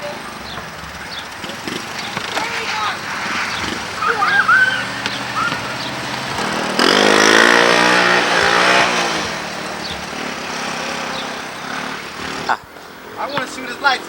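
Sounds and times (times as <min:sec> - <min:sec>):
small engine revving: 0:00.0 - 0:13.9.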